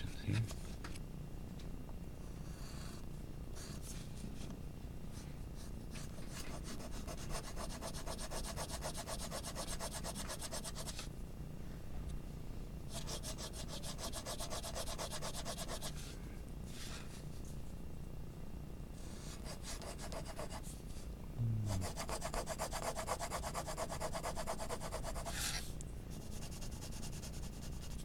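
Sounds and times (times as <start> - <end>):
pencil scratching on paper: 5.9 - 11.0, 12.9 - 16.0, 19.2 - 20.7, 21.8 - 28.0
steady low rumble: 21.3 - 22.1.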